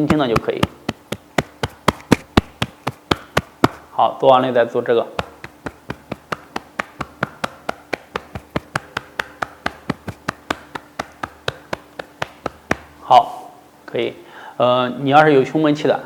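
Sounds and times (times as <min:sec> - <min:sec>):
fist tapping on chest: 0:00.0 - 0:03.9, 0:05.1 - 0:13.0.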